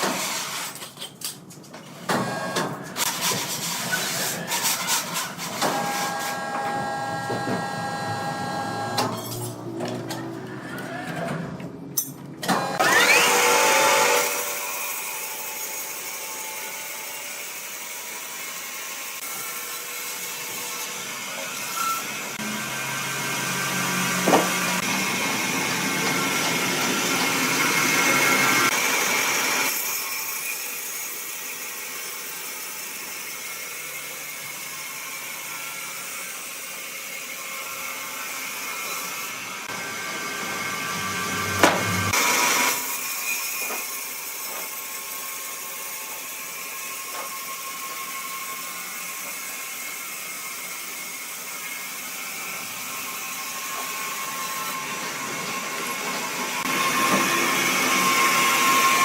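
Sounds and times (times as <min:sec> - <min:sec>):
woodworking machinery whining: 0:04.1 - 0:16.2, 0:20.3 - 0:30.4, 0:37.3 - 0:59.0.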